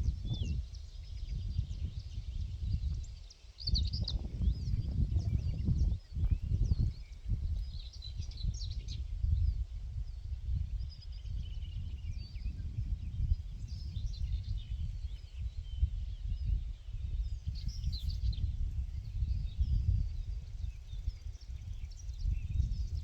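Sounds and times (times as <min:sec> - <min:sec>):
small birds chirping: 0:00.0 - 0:23.0.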